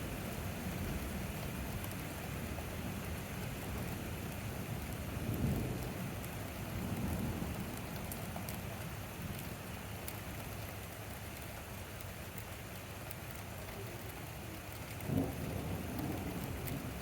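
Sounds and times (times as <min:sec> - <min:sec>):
rain drop ticks: 0:00.0 - 0:17.0
steady rain: 0:00.0 - 0:17.0
distant thunder rumble: 0:04.8 - 0:09.4, 0:13.8 - 0:17.0.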